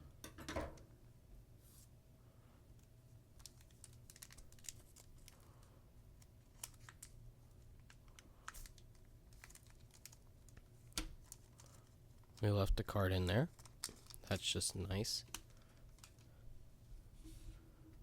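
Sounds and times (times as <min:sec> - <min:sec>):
foil pack crinkling: 0:03.4 - 0:05.4, 0:06.5 - 0:07.2, 0:07.9 - 0:10.6.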